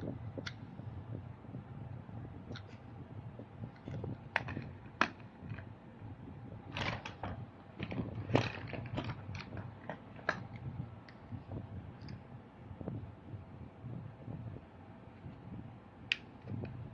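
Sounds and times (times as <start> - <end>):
plastic toy vehicles clicking: 3.8 - 5.7, 6.7 - 11.2.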